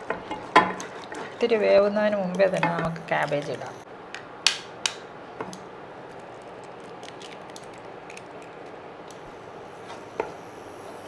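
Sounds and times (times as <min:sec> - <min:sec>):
eggs sizzling in a pan: 0:00.0 - 0:03.9, 0:09.2 - 0:11.0.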